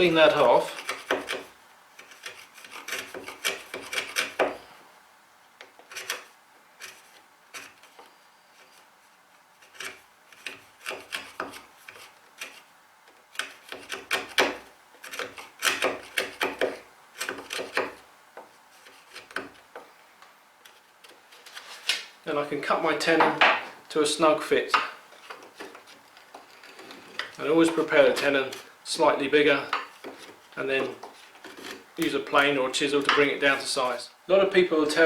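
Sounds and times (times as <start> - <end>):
chisel scraping wood: 0.0 - 4.7, 5.6 - 19.9, 24.8 - 33.2.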